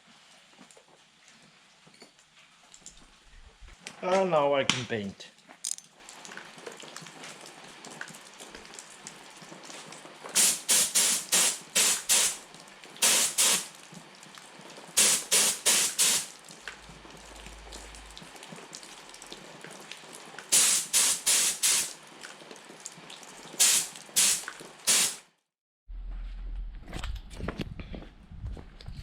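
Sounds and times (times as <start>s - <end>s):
spray paint hissing: 10.4s - 12.4s, 13.0s - 13.7s, 15.0s - 16.3s, 20.5s - 22.0s, 23.6s - 25.2s.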